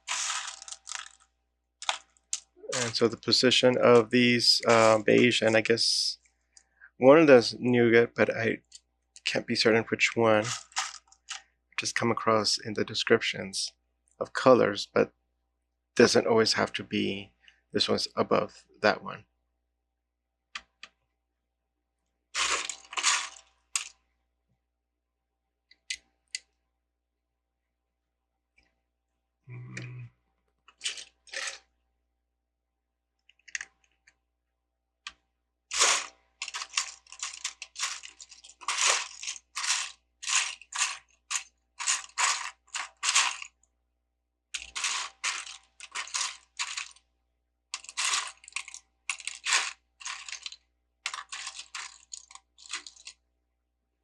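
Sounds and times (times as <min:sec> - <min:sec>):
plastic toy bricks clicking: 0:01.8 - 0:03.0, 0:47.8 - 0:53.2.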